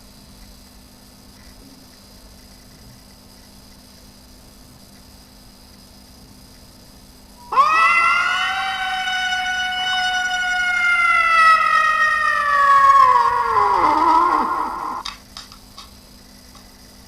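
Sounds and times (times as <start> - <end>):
animal howling: 7.4 - 15.1.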